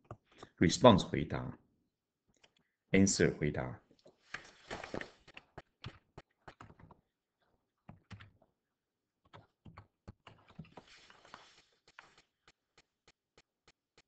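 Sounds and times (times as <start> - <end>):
faint clicks and taps: 2.3 - 2.7
soft rustle: 10.6 - 12.6.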